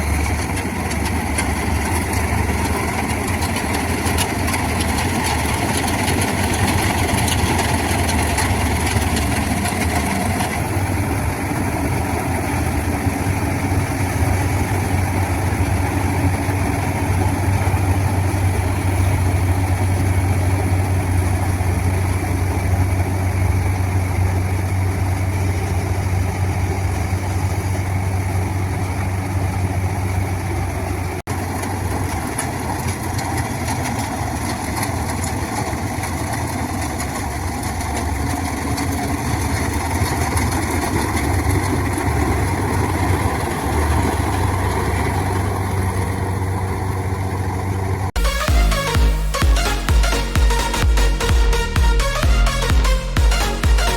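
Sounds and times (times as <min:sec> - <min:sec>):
diesel engine humming: 0:00.0 - 0:53.9.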